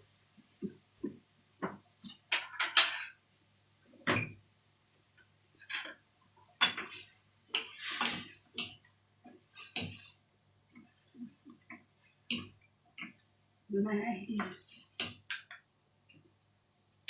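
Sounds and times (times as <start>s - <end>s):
dishes and utensils clattering: 2.0s - 3.2s, 5.6s - 6.0s, 6.6s - 11.7s.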